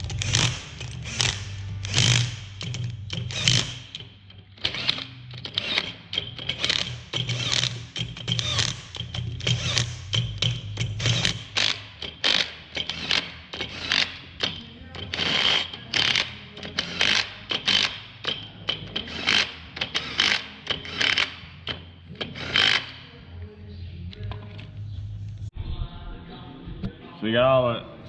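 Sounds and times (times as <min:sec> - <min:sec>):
hand tools knocking on metal: 0:02.1 - 0:22.8.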